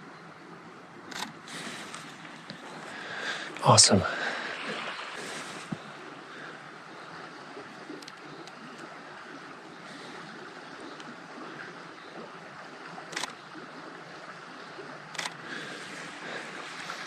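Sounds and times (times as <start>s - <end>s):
outdoor ambience hiss: 0.0s - 17.0s
camera shutter clicks: 1.1s - 1.4s, 13.1s - 13.4s, 15.1s - 15.4s.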